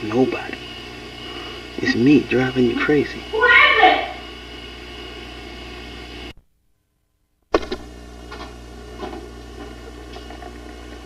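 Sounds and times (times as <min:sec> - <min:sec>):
electrical hum and hiss: 0:00.0 - 0:06.6, 0:07.4 - 0:11.0
sharp click: 0:07.5 - 0:07.9.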